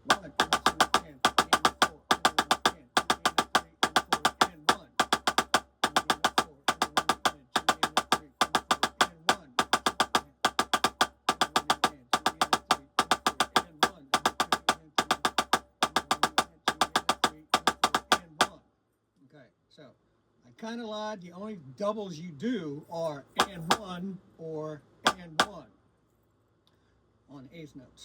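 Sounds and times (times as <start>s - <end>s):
drumsticks playing fast strokes: 0.0s - 18.6s, 23.4s - 24.0s, 25.0s - 25.6s.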